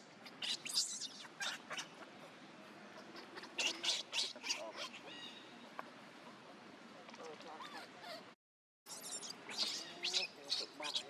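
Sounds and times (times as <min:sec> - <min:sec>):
high-pitched animal calls: 0:08.9 - 0:11.0.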